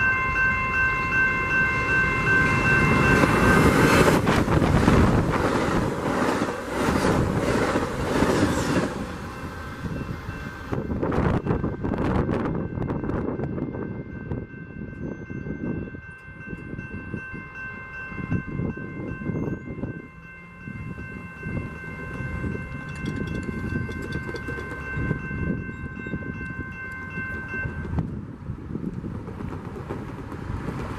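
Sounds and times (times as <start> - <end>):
steady high chord tones: 0.0 - 4.6, 9.1 - 28.0
train wheels rumbling on rails: 0.0 - 30.9.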